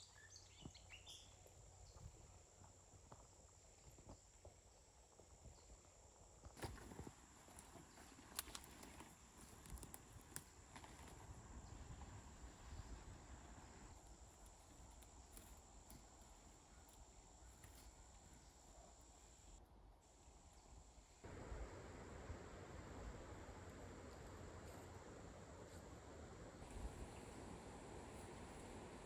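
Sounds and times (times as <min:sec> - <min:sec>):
steady high hum: 0:18.0 - 0:29.0.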